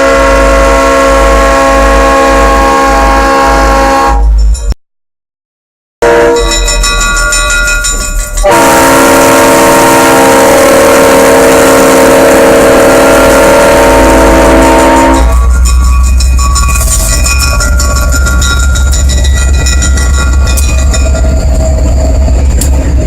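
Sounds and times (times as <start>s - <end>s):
locomotive horn chord: 0.0s - 4.3s, 6.0s - 6.5s, 8.4s - 15.4s
diesel locomotive engine rumble: 0.0s - 4.8s, 6.0s - 23.0s.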